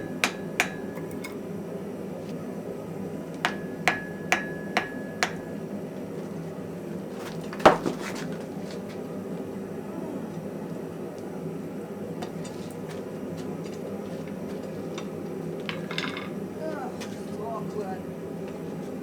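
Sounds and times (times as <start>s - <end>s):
hammer striking metal anvil: 0.0s - 1.4s, 3.5s - 5.7s.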